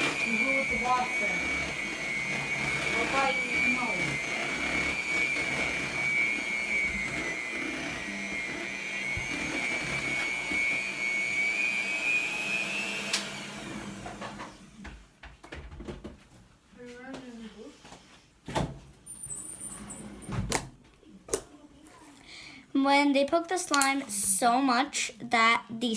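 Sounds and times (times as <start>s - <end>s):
appliance motor whining: 0.0s - 14.9s.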